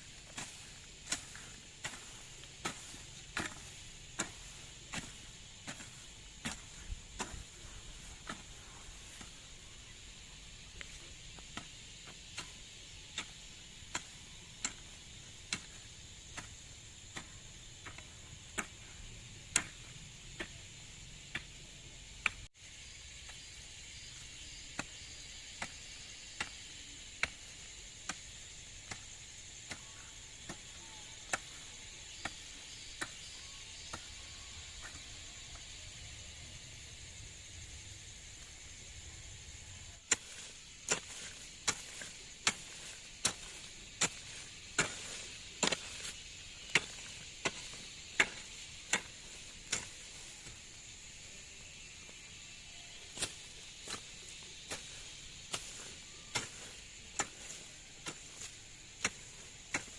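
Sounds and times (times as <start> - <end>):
high insect hiss: 0.0 - 59.9
hand tool chopping: 0.2 - 9.5, 10.8 - 18.9, 19.5 - 20.6, 40.1 - 50.6, 53.0 - 59.9.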